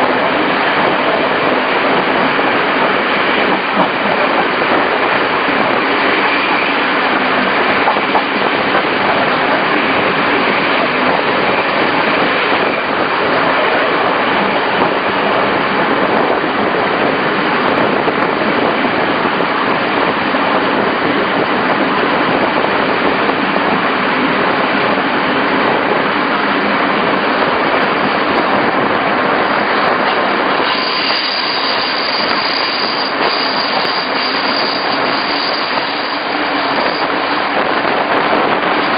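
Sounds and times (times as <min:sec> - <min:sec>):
train wheel and rail noise: 0:00.0 - 0:38.9
high thin tone: 0:30.1 - 0:37.5.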